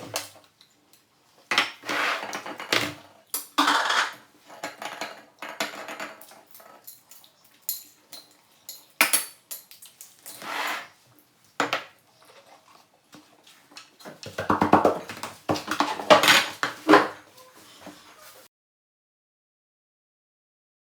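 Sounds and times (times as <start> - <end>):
dishes and cutlery clinking: 0.0 - 11.0.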